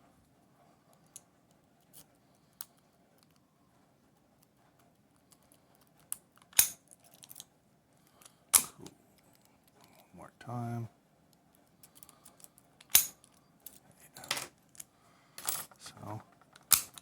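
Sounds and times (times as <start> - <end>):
padlock snapping open: 6.1 - 7.4, 12.8 - 13.2, 16.6 - 17.0.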